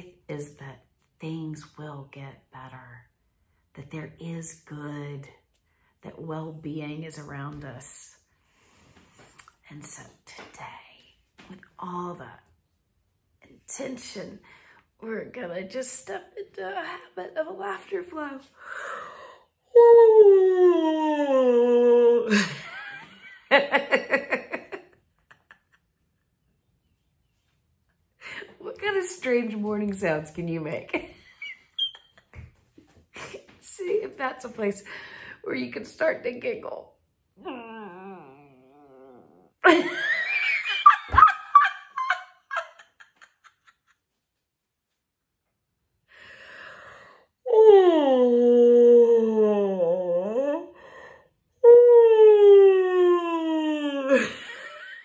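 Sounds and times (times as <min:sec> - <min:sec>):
breath: 0:08.3 - 0:09.4, 0:18.6 - 0:19.5, 0:34.9 - 0:35.4, 0:46.1 - 0:47.4, 0:50.8 - 0:51.4
person laughing: 0:22.3 - 0:26.0, 0:39.7 - 0:44.0, 0:54.0 - 0:55.0.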